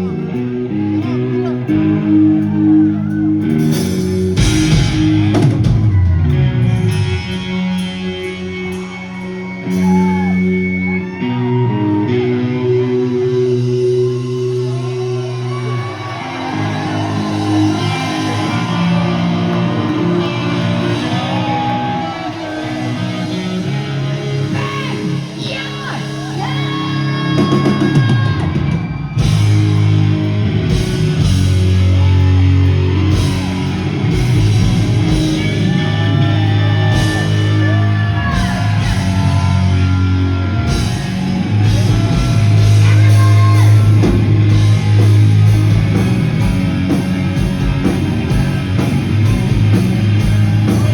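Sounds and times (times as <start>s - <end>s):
electric guitar and bass chords: 0.0s - 50.9s
drums steady beat: 3.5s - 7.8s, 27.3s - 50.9s
singer shouting lines: 17.6s - 28.6s, 42.4s - 44.0s.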